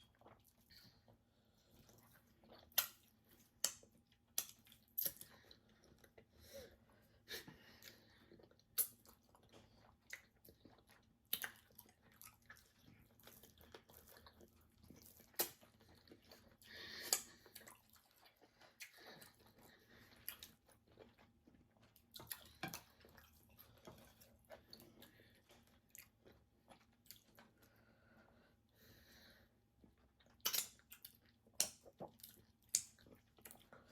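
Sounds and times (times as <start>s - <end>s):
people chewing: 0.0s - 28.9s
food crunching: 8.2s - 27.7s.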